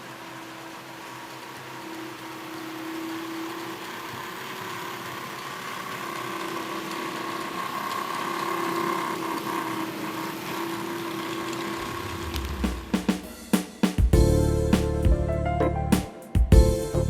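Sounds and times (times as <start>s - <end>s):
model locomotive motor whining: 0.0s - 13.0s.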